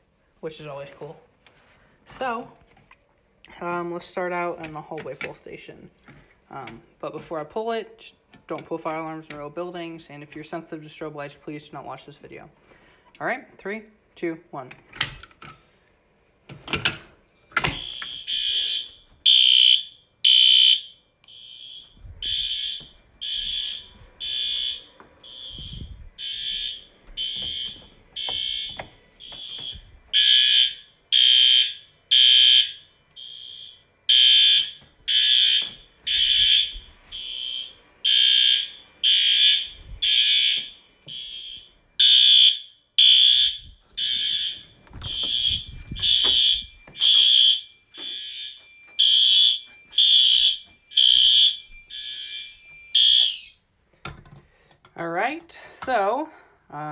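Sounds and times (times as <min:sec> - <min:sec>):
fire alarm pull station clicks: 0:16.7 - 0:23.7, 0:44.0 - 0:53.5
fire alarm horns blasting: 0:17.3 - 0:53.7.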